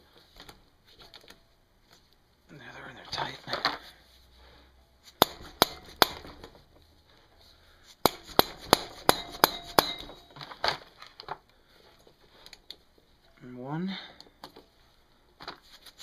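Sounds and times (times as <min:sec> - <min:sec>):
hammer striking impact driver: 0:05.2 - 0:06.4, 0:08.0 - 0:10.3.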